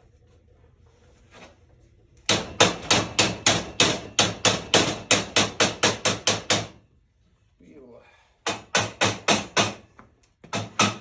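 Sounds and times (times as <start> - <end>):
hammer striking metal pipe: 2.3 - 6.8.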